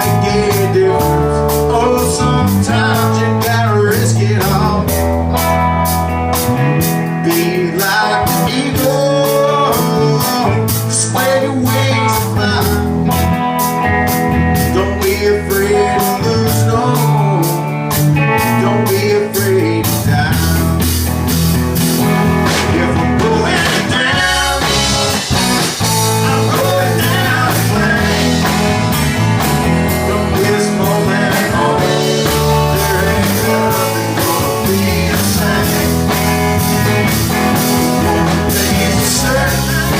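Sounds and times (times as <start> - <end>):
bass line: 0.0 - 39.9
electric guitar lines: 0.0 - 39.9
drums with fast cymbal beat: 16.9 - 39.9.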